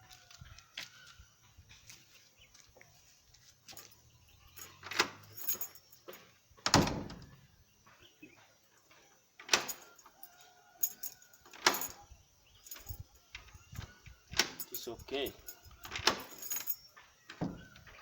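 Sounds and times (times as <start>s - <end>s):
mortice lock clacking: 14.4s - 17.6s.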